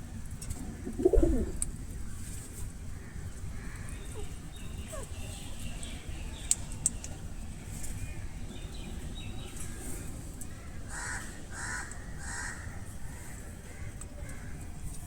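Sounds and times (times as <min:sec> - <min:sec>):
bird harsh caw-like calls: 0:10.9 - 0:14.5.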